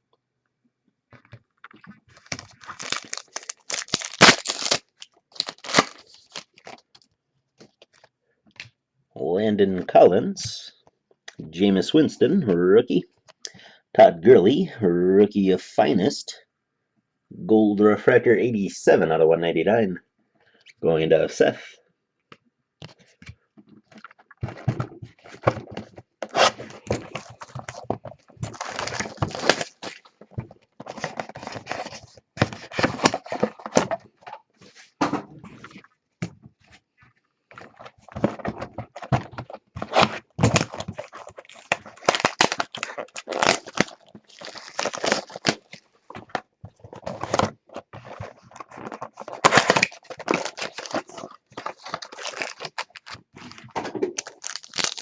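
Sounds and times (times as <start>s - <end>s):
card wrappers crinkling and tearing: 1.8s - 7.0s, 26.2s - 30.2s, 30.8s - 34.0s, 37.5s - 46.0s, 46.8s - 55.0s.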